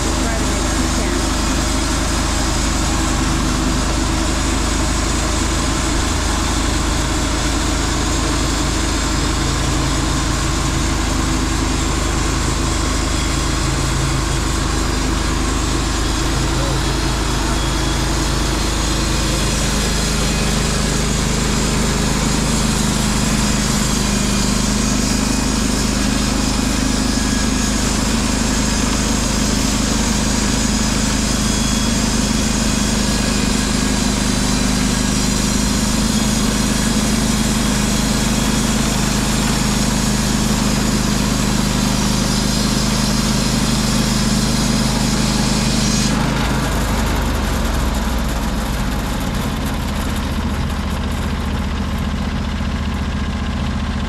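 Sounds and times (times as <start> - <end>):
sawmill engine droning: 0.0 - 54.0
band blade cutting log: 15.5 - 47.0.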